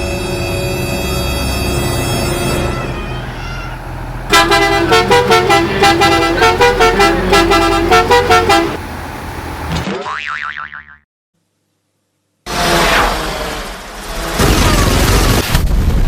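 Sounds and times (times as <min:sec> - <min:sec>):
bus musical air horn tooting: 0:00.0 - 0:09.7
low engine hum: 0:00.0 - 0:09.8.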